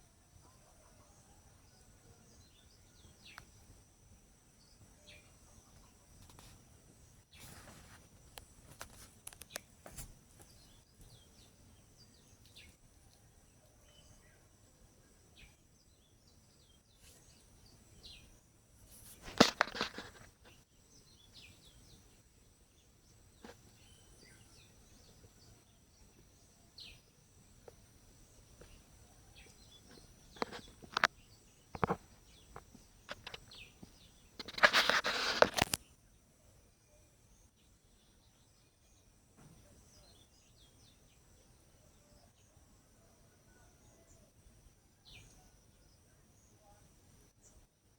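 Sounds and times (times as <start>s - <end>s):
birds chirping: 0.0s - 18.4s, 19.1s - 36.0s.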